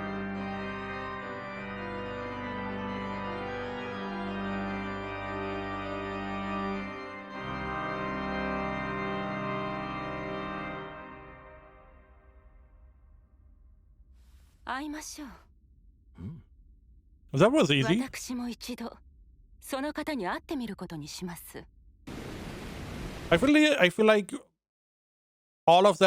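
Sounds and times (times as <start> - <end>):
organ playing sustained chords: 0.0 - 12.1.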